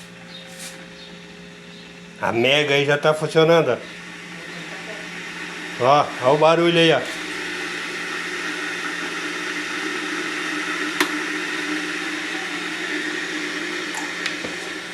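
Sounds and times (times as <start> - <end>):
electric kettle hissing: 0.0 - 1.4, 2.1 - 14.9
kettle click: 11.0 - 11.2.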